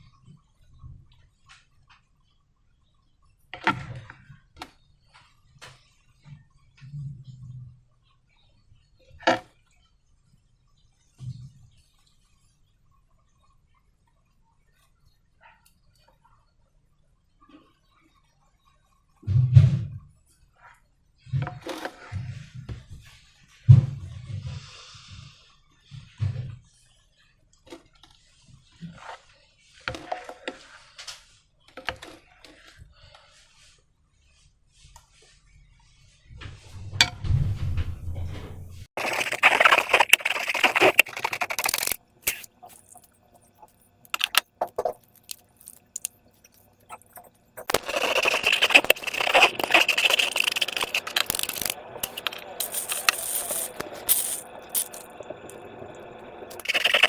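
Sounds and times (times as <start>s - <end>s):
slime squelching: 38.9s - 55.7s, 56.5s - 57.0s.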